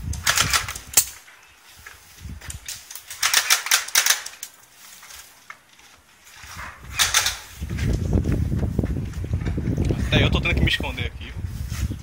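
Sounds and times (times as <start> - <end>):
airsoft guns firing: 3.1 - 4.4.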